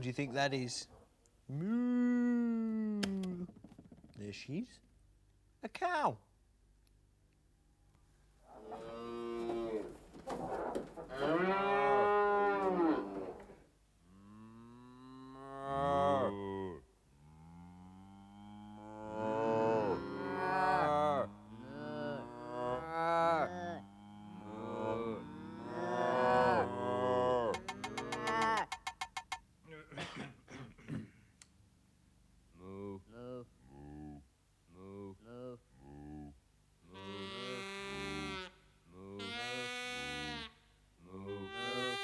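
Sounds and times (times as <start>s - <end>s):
cattle mooing: 8.5s - 13.6s, 18.4s - 23.6s.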